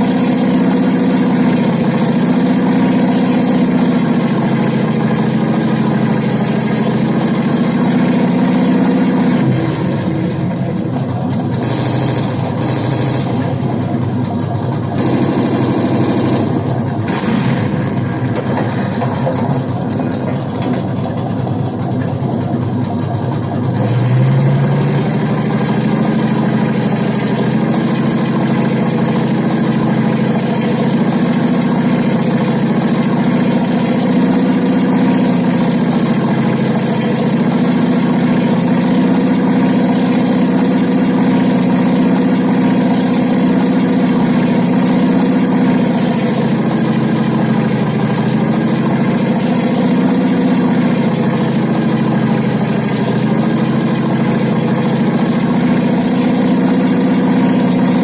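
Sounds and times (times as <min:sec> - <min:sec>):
tank engine idling and revving: 0:00.0 - 0:58.0.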